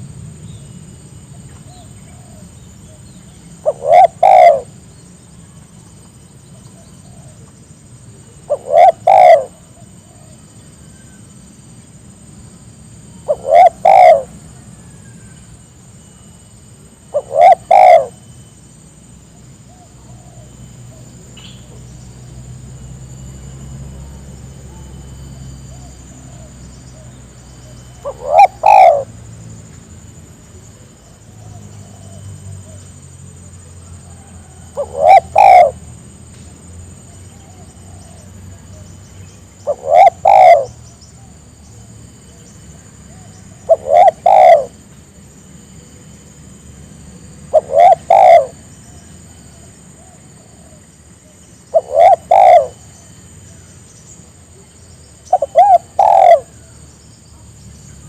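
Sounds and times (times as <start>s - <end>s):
dove cooing: 1.3s - 5.0s, 6.4s - 7.5s, 8.1s - 11.3s, 13.1s - 15.3s, 16.8s - 18.3s, 19.6s - 21.9s, 23.2s - 29.4s, 30.8s - 36.0s, 36.9s - 41.4s, 43.1s - 44.8s, 47.4s - 53.7s, 54.5s - 56.8s
faint steady high tone: 13.1s - 29.2s.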